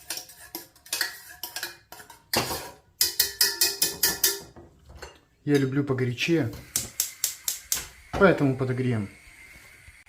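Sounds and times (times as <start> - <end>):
metal spoon scraping a saucepan: 0.0 - 7.9.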